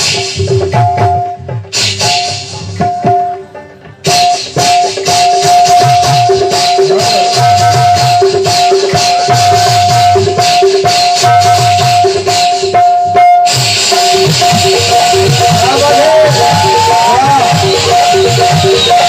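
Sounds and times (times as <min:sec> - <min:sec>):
music with pulsing bass beat: 0:02.0 - 0:19.0
steady held tones: 0:12.8 - 0:19.0.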